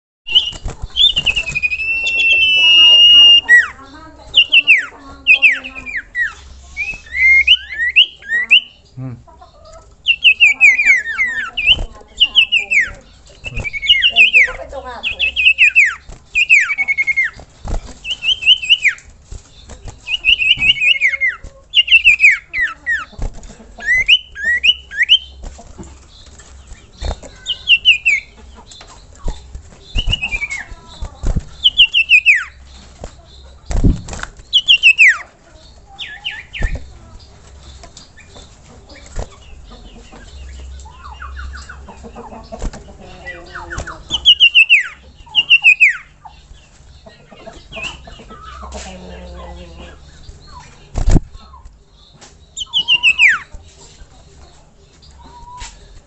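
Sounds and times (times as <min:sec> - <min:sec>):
bird singing whistled notes: 0:00.3 - 0:08.8, 0:10.0 - 0:17.4, 0:18.0 - 0:23.2, 0:23.8 - 0:25.4, 0:26.2 - 0:32.8, 0:33.4 - 0:35.3, 0:43.5 - 0:46.3, 0:51.9 - 0:53.5.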